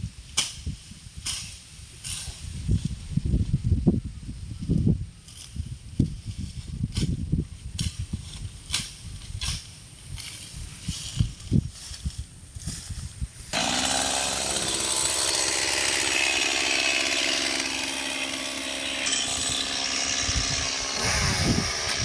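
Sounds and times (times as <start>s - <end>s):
chainsaw running: 13.5s - 22.0s.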